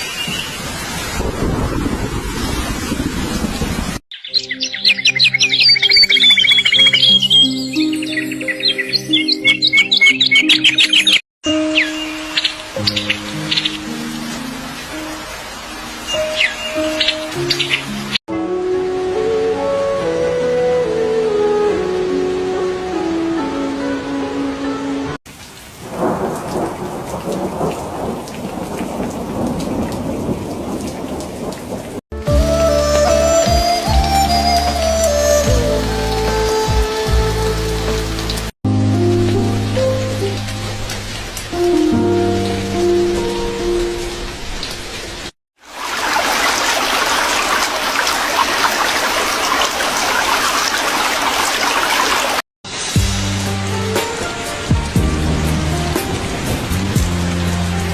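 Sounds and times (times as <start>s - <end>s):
rain falling: 0.0s - 4.0s, 12.6s - 18.2s, 25.3s - 38.5s, 39.1s - 57.9s
rumble of thunder: 1.1s - 4.0s, 25.8s - 32.0s
soft background music: 4.4s - 25.1s, 32.2s - 44.4s.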